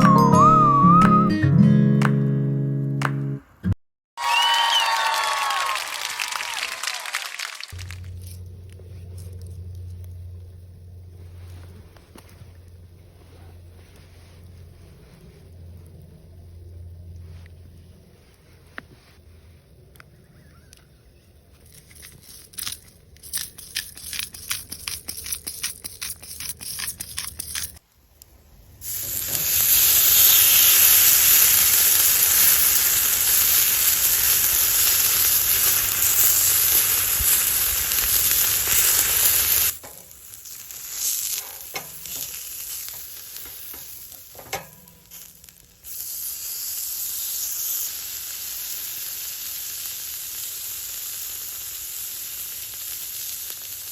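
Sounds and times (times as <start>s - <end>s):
food sizzling in a pan: 28.8s - 53.9s.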